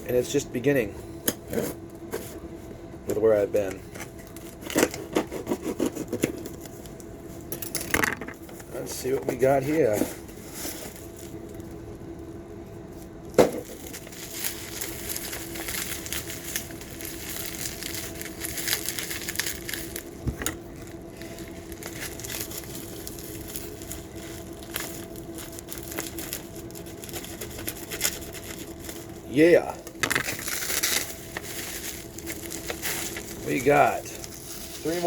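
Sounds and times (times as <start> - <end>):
packaging crinkling and rustling: 8.4 - 11.8, 13.4 - 35.0.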